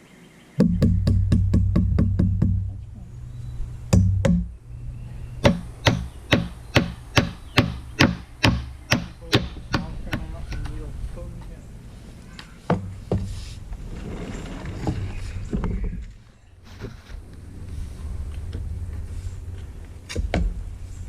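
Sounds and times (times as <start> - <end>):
hammer blows: 0.6 - 10.8.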